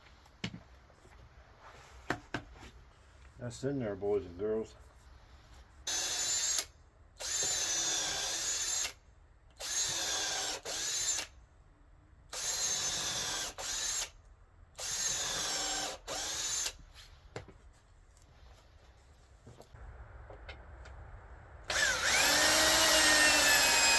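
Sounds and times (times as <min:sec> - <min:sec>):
power drill whining: 0:05.9 - 0:09.0, 0:09.6 - 0:11.3, 0:12.3 - 0:14.2, 0:14.8 - 0:16.8, 0:21.7 - 0:23.9.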